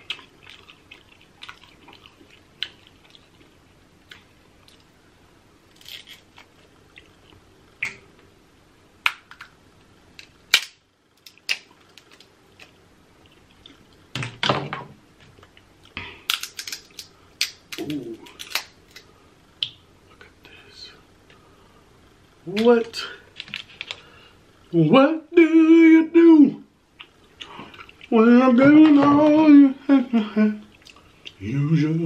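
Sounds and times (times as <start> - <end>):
chewing and smacking: 0.0 - 4.9, 27.0 - 28.1
crab shell cracking: 10.2 - 12.8, 16.2 - 19.1.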